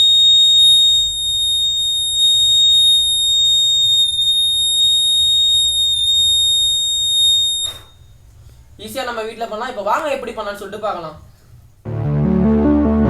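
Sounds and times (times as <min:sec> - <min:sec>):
high-pitched alarm buzzer: 0:00.0 - 0:08.0.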